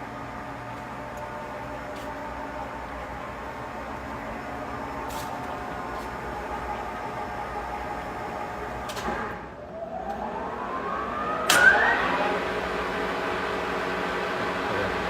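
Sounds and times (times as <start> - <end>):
rising drive whine: 0.0 - 15.0
lathe running with steady hum: 10.2 - 15.0.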